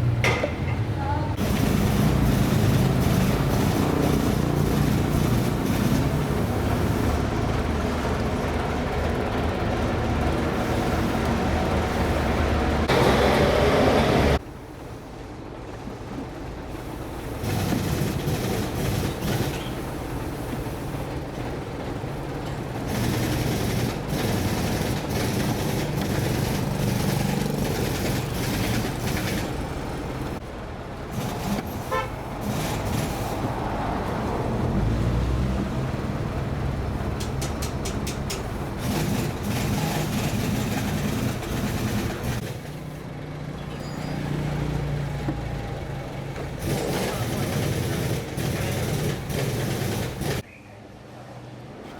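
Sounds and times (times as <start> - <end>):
vehicle engines running: 0.0 - 50.5
vehicle horn: 31.8 - 32.2.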